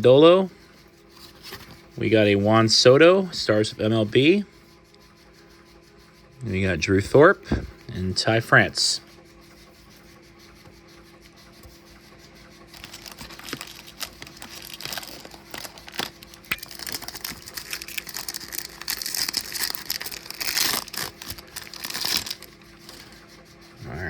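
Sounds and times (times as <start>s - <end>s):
faint steady hum: 0.0s - 24.0s
foil wrapper tearing and crinkling: 12.8s - 23.0s.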